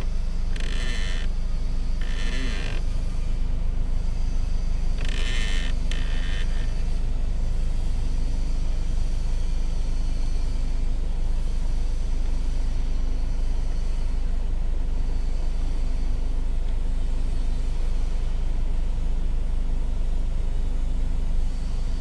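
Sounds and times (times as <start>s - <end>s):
actuator motor harsh high-pitched noise: 0.0s - 1.4s, 2.0s - 2.8s, 5.0s - 6.7s.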